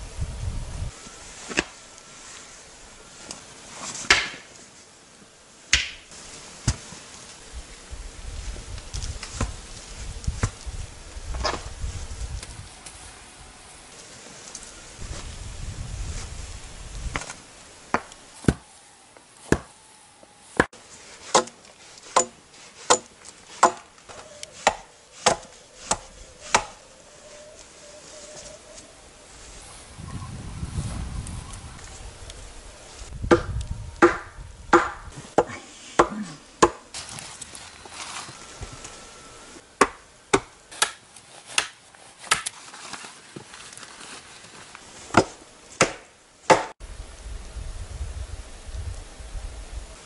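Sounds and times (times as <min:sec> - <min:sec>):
blade chopping wood: 0:04.0 - 0:04.5, 0:21.3 - 0:26.8, 0:33.3 - 0:36.8, 0:39.8 - 0:42.6, 0:45.1 - 0:46.8.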